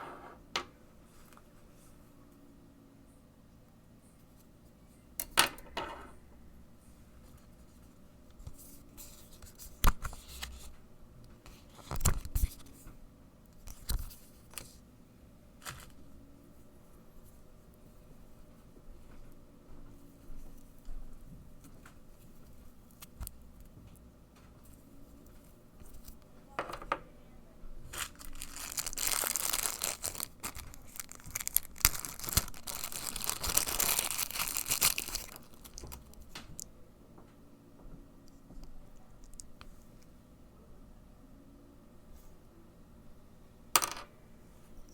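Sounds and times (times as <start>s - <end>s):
packaging rustling and scraping: 27.9s - 36.2s.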